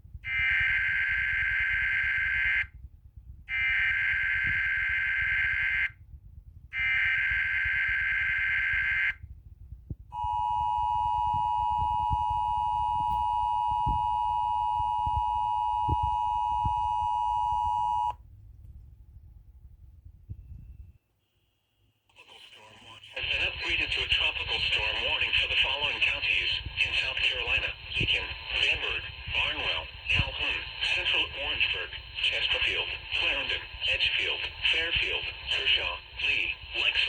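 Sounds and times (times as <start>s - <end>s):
two-tone attention signal: 10.2s - 18.1s.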